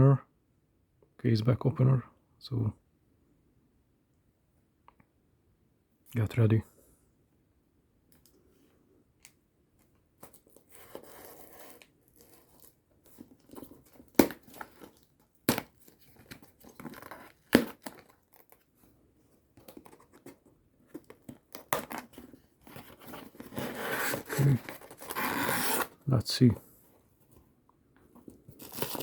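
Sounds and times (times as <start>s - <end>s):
tape and cardboard tearing: 10.2s - 18.6s, 21.5s - 26.0s, 28.5s - 29.0s.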